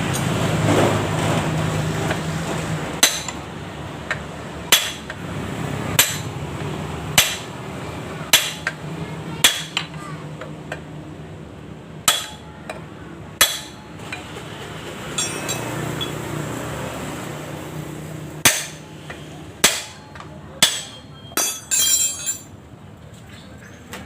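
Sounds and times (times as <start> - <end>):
metal tools knocking and clinking: 15.2 - 16.2, 20.1 - 22.6
small metal parts rattling: 21.4 - 22.5.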